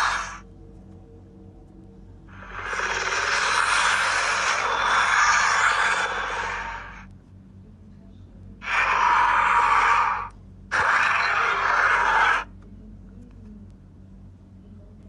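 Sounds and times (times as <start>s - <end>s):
creature hissing rasps: 0.0s - 0.4s, 2.3s - 7.1s, 8.6s - 12.5s.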